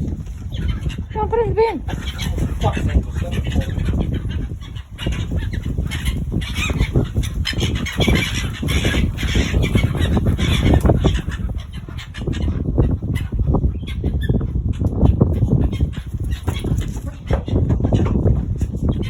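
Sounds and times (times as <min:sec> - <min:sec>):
gulls squawking: 0:00.4 - 0:19.0.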